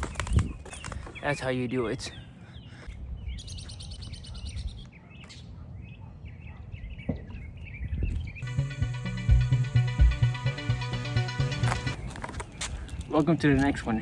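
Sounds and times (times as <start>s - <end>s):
birds chirping and calling: 0.0s - 8.5s, 11.9s - 14.0s
background music: 8.4s - 12.0s.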